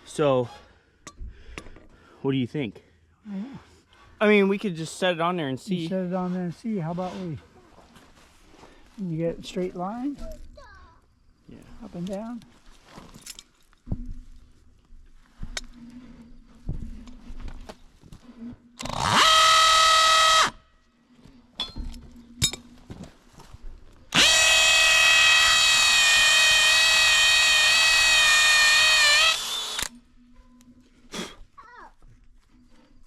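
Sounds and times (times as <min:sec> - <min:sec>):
drill boring into wood: 0:18.8 - 0:20.6, 0:24.1 - 0:29.9.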